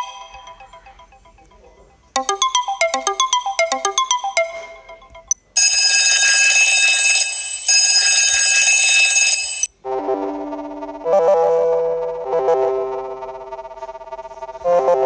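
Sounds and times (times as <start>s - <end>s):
synthesized keyboard melody: 0.0s - 5.6s, 9.8s - 15.0s
buzzing electronic phone alarm: 0.0s - 9.7s.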